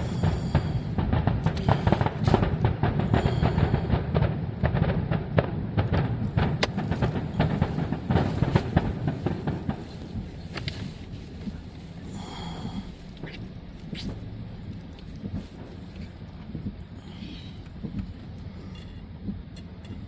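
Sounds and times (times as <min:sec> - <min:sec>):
fireworks booming and crackling: 0:00.0 - 0:19.8.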